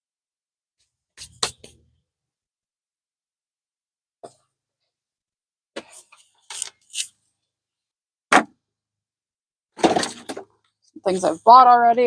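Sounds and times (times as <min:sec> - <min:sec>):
plastic pots clattering: 0:09.8 - 0:10.6.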